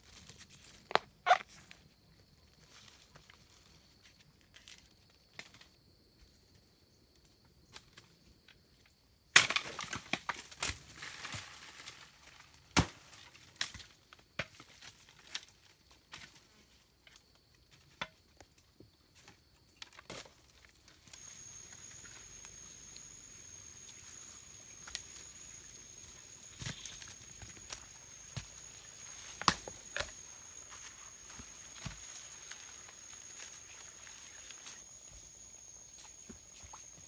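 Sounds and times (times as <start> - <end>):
plant material crunching and snapping: 24.8 - 34.7.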